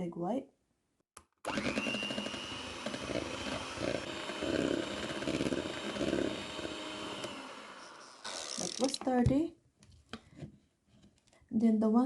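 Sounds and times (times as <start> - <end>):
electric hand mixer whining: 1.4 - 9.0
beaters churning in bowl: 1.5 - 9.2.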